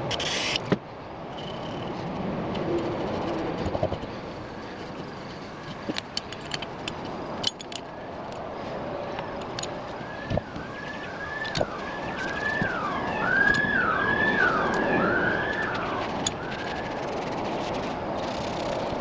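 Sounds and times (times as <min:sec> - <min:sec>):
sharp clicks and knocks: 0:04.8 - 0:08.4, 0:09.2 - 0:10.7
siren wailing: 0:09.9 - 0:17.1.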